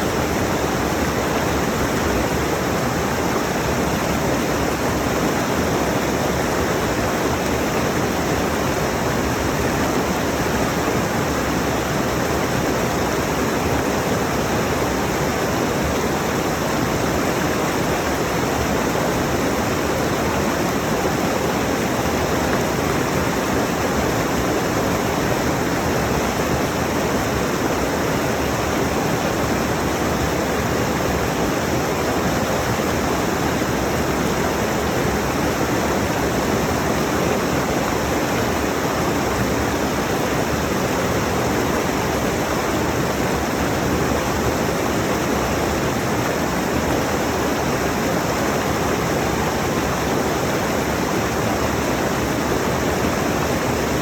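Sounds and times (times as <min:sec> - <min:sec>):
water flowing over rocks: 0:00.0 - 0:54.0.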